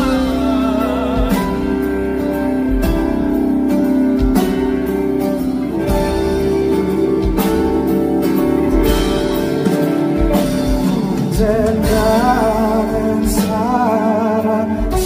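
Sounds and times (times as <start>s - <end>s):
guitar sustained chords: 0.0s - 15.0s
live band playing pop ballad: 0.0s - 15.0s.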